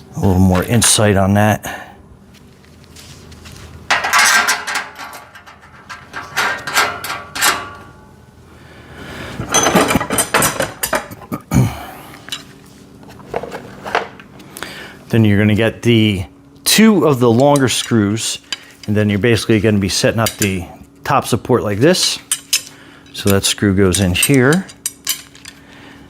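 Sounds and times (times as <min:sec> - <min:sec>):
metal rack parts clinking: 0:03.9 - 0:08.0, 0:09.5 - 0:11.1, 0:20.2 - 0:20.7, 0:22.0 - 0:25.7.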